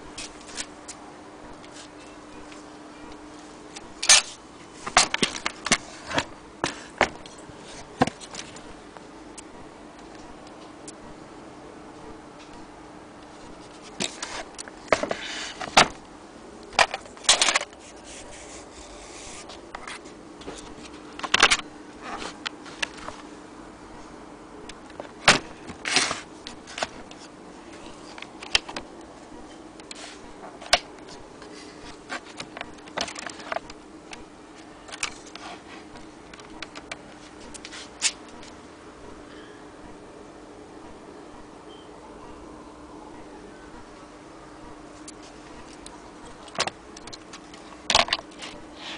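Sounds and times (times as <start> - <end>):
faint steady hum: 0.0 - 48.9
scraping and rubbing sounds: 17.0 - 21.0.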